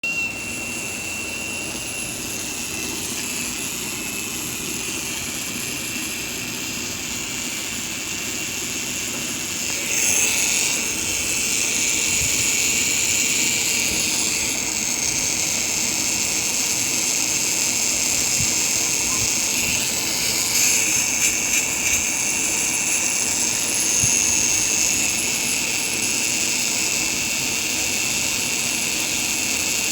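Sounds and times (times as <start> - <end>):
small motor high-pitched whine: 0.0 - 29.9.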